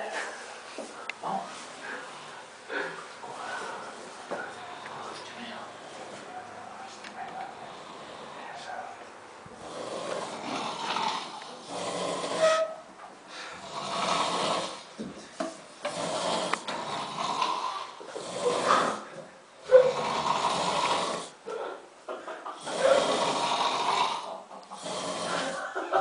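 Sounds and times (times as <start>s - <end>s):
person snoring: 7.5s - 8.6s, 9.6s - 12.5s, 13.5s - 14.9s, 15.9s - 21.4s, 22.6s - 25.8s.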